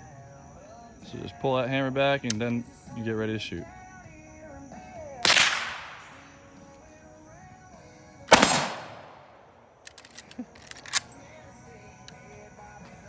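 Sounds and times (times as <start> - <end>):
background music: 0.0 - 13.0
rifle shots with long echo: 5.2 - 6.6, 8.3 - 9.9.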